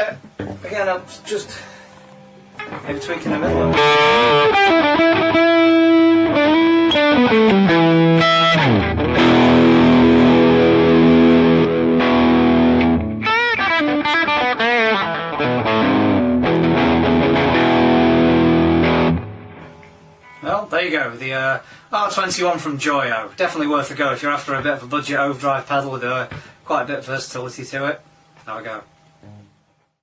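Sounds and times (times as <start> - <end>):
overdriven electric guitar: 2.6 - 20.4.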